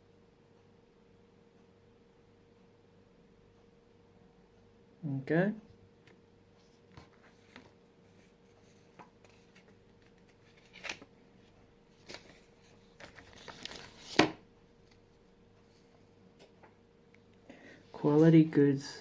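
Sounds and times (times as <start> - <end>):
package rustling: 9.0 - 11.1, 12.0 - 14.4.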